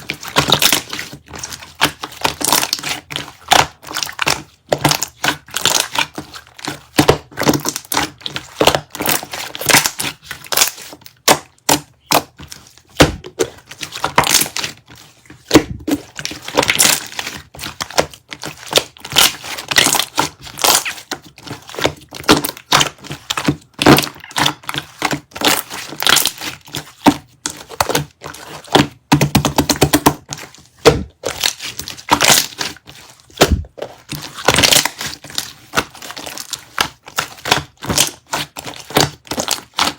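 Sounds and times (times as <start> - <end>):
objects tapping and clicking: 10.8 - 39.9.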